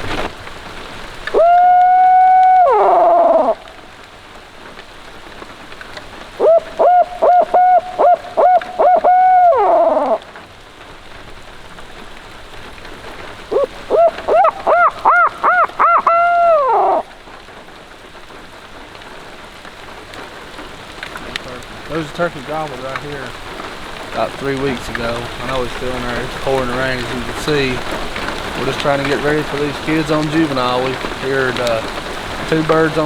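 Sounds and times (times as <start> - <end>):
heavy rain: 0.0 - 33.0
owl hooting: 1.3 - 3.8, 6.4 - 10.3, 13.5 - 17.2.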